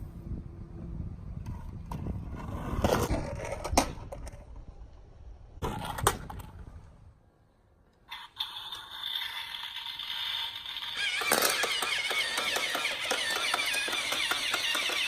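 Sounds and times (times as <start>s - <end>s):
toy car scrapes and clicks: 8.0s - 15.0s
toy cars rolling rumble: 8.1s - 15.0s.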